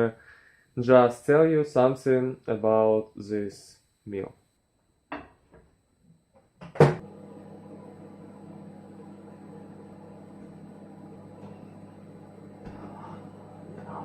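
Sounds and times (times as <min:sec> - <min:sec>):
microwave humming: 0:05.1 - 0:14.0.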